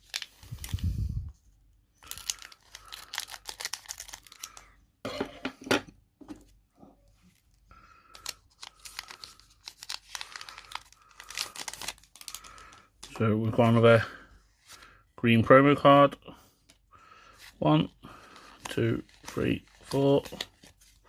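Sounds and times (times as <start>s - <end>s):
foil wrapper crinkling and tearing: 0.0s - 1.1s, 1.9s - 4.8s, 7.8s - 13.2s, 18.1s - 21.0s.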